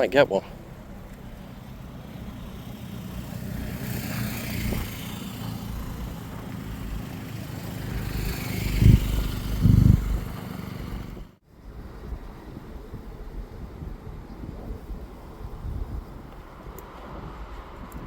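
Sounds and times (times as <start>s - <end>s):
vehicles passing close by: 0.0s - 13.3s.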